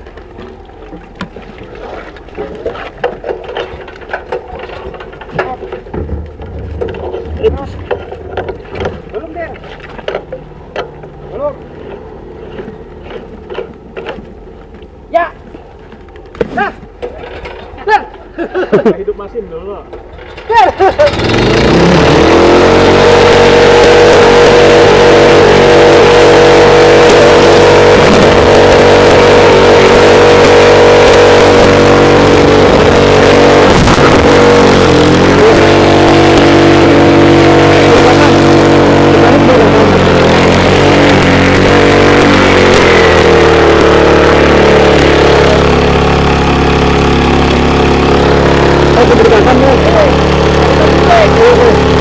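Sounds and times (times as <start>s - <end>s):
small petrol engine revving: 20.1s - 52.0s.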